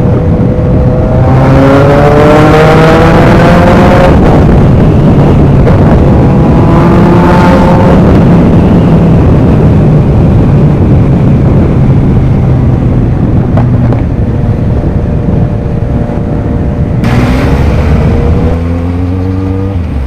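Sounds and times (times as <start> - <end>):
car engine and loud exhaust: 0.0 - 20.0
wind noise: 0.0 - 20.0.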